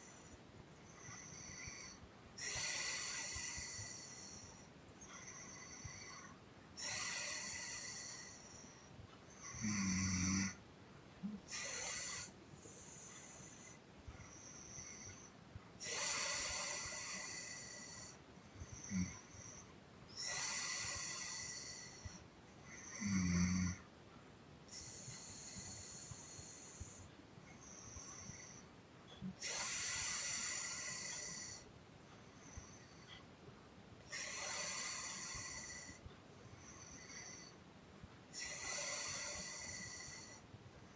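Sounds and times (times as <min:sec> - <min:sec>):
low-pitched snore: 0:00.0 - 0:08.6, 0:09.4 - 0:10.6, 0:11.2 - 0:23.9, 0:24.7 - 0:31.7, 0:34.1 - 0:37.6, 0:38.3 - 0:40.5
heavy hissing exhalations: 0:02.4 - 0:04.7, 0:06.8 - 0:08.6, 0:11.4 - 0:13.8, 0:14.6 - 0:19.4, 0:29.4 - 0:31.7, 0:34.1 - 0:36.0, 0:38.3 - 0:40.4
small snorts: 0:11.2 - 0:23.8, 0:34.1 - 0:37.6.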